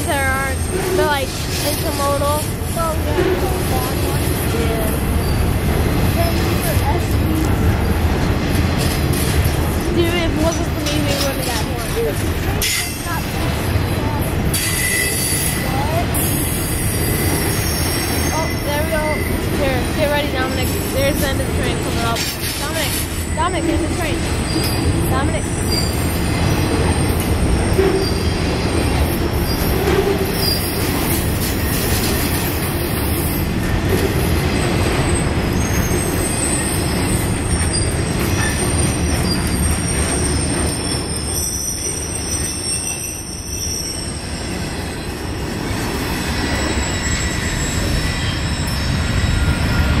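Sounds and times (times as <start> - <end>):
train wheels rumbling on track: 0.0 - 50.0
high wheel squeal: 14.5 - 33.6, 34.5 - 50.0.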